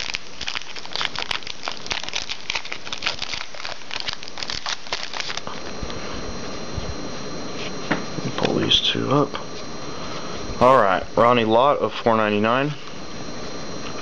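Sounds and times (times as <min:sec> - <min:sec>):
packaging crinkling and rustling: 0:00.0 - 0:06.0.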